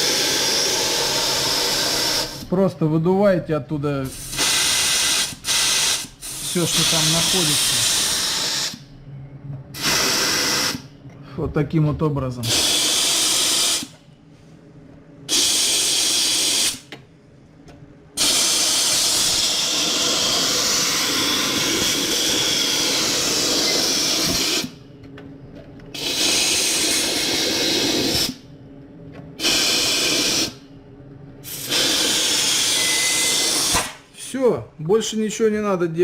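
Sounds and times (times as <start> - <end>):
air blow gun hissing: 0.0 - 2.5, 4.1 - 8.8, 9.8 - 10.8, 12.4 - 14.0, 15.3 - 16.9, 18.2 - 24.8, 26.0 - 28.4, 29.4 - 30.6, 31.4 - 34.0.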